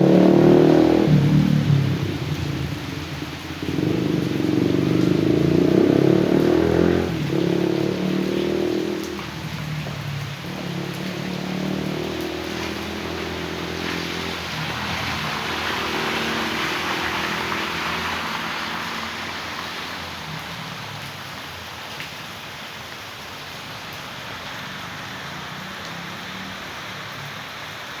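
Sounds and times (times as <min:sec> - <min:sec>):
vehicle engine humming: 0:00.0 - 0:21.0
floodwater rushing: 0:00.0 - 0:28.0.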